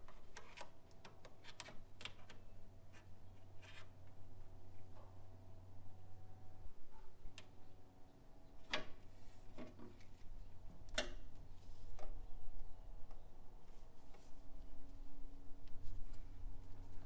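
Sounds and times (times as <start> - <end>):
low hum: 4.0 - 8.6.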